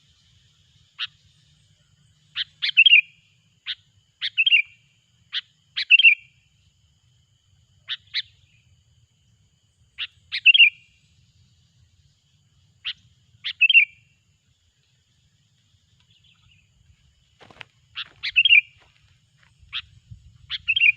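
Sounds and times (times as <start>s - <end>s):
bulbul calling: 2.3s - 6.3s, 10.0s - 10.9s, 12.8s - 14.1s, 17.4s - 18.9s, 19.6s - 20.9s.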